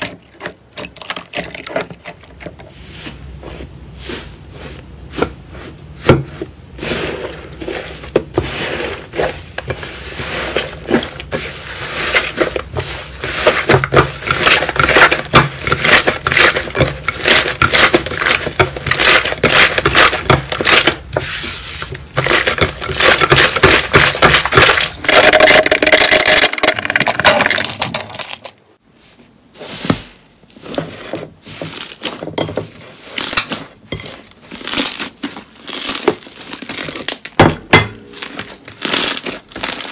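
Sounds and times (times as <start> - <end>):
slime crackling and popping: 12.0 - 21.1, 34.4 - 37.4, 38.2 - 39.9.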